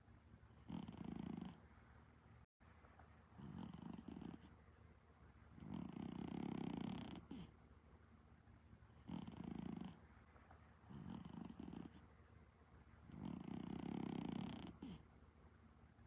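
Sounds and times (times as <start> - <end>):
cat snoring: 0.6 - 1.6, 3.4 - 4.5, 5.6 - 7.6, 9.0 - 10.0, 10.9 - 12.1, 13.1 - 15.0.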